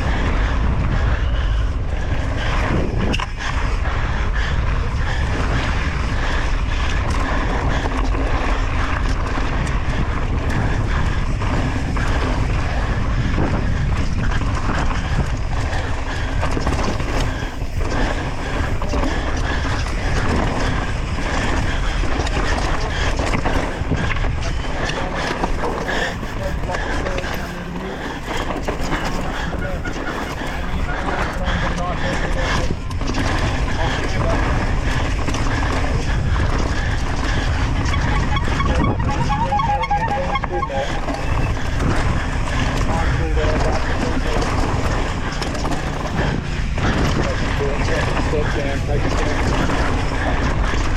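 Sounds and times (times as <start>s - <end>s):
bike clattering and rattling: 0.0s - 50.9s
wind rushing over microphone: 0.0s - 50.9s.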